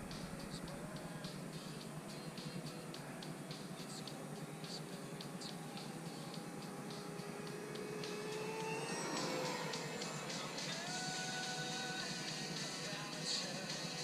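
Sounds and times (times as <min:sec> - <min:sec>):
model plane motor whine: 0:04.1 - 0:12.2.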